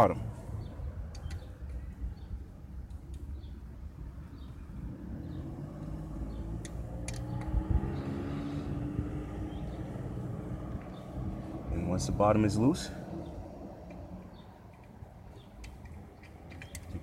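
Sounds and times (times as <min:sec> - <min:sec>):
sharp clicks: 0:01.1 - 0:01.8, 0:06.6 - 0:07.6, 0:13.9 - 0:17.0.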